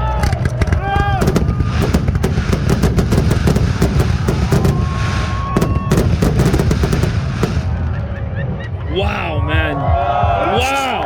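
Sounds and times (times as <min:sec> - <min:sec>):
fireworks shell bursts and crackle: 0:00.0 - 0:08.0.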